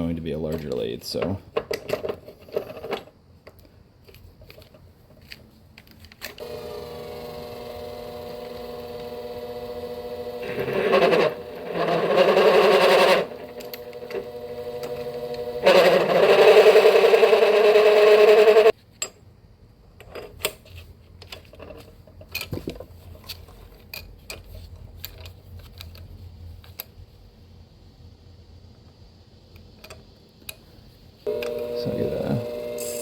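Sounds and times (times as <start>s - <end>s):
drill cutting workpiece: 6.4s - 18.7s, 31.3s - 33.0s
lathe motor humming: 6.4s - 18.7s, 31.3s - 33.0s.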